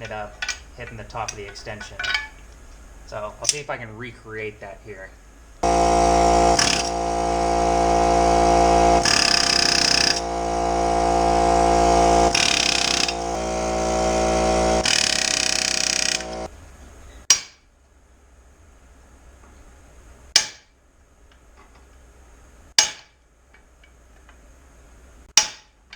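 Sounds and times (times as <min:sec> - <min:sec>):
pneumatic air hammer rattling: 0:05.6 - 0:16.5.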